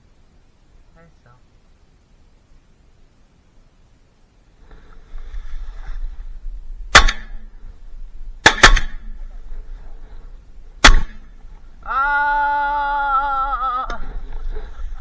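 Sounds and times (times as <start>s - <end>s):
shotgun shots: 6.9s - 7.5s, 8.4s - 9.2s, 10.8s - 11.4s
long steady held call: 10.7s - 14.8s.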